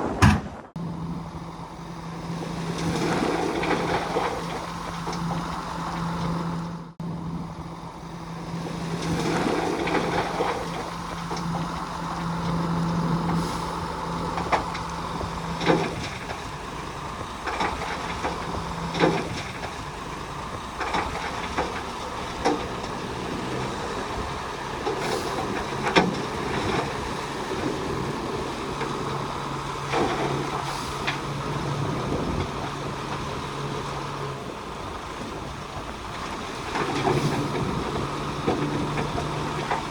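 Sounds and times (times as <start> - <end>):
heavy diesel machinery running: 0.0 - 39.9
sharp metal clanks and knocks: 0.1 - 0.7.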